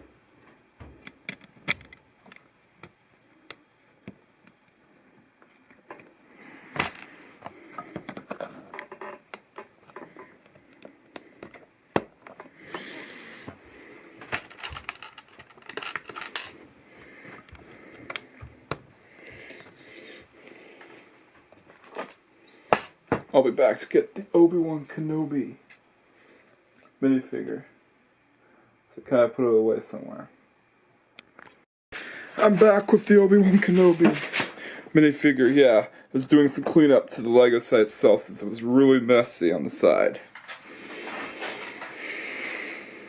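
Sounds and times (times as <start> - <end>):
plastic pieces clicking: 14.2 - 16.5
plastic pieces rustling: 14.2 - 16.6.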